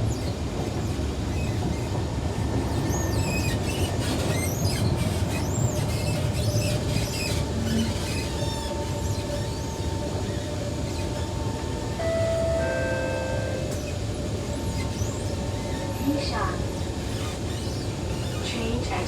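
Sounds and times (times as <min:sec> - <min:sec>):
high squeals of train: 0:00.0 - 0:19.0
train wheels rumbling on rail: 0:00.0 - 0:19.0
steady whining tones: 0:11.9 - 0:16.0.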